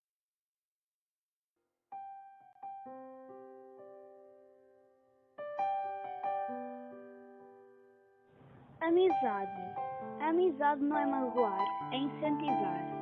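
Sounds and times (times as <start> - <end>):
slow keyboard melody: 2.0 - 13.0.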